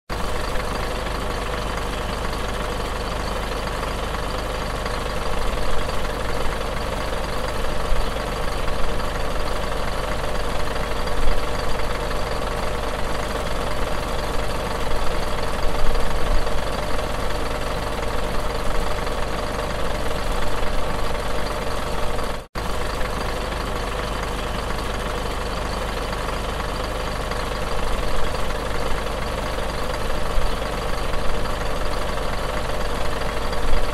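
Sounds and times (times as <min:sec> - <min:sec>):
bus engine idling: 0:00.1 - 0:33.9.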